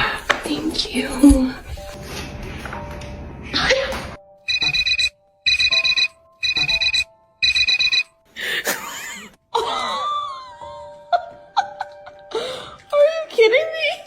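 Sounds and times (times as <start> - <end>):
background music: 0.0 - 14.0
electronic alarm trilling beeps: 4.5 - 8.1.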